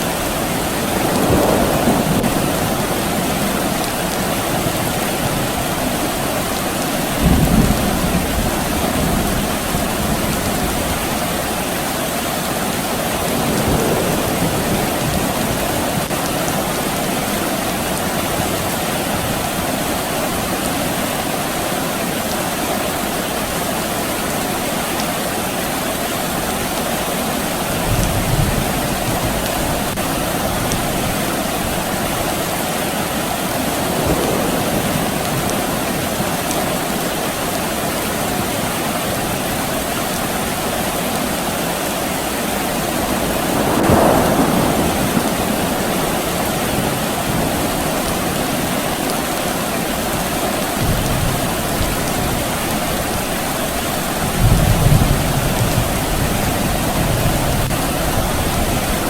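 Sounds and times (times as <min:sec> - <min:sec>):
distant thunder rumbles: 0:00.0 - 0:11.9, 0:12.7 - 0:20.2, 0:33.5 - 0:37.1, 0:42.7 - 0:59.0
steady soft rain: 0:00.0 - 0:59.0.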